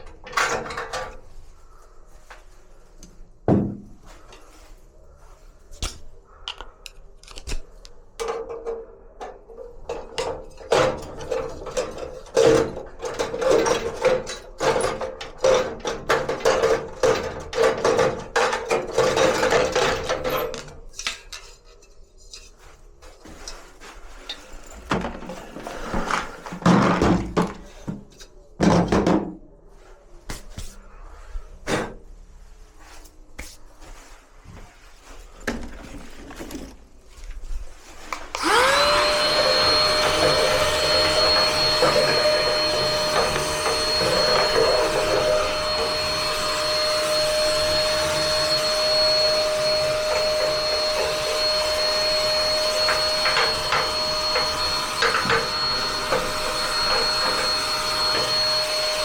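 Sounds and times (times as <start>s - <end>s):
vacuum cleaner motor whining: 38.1s - 59.0s.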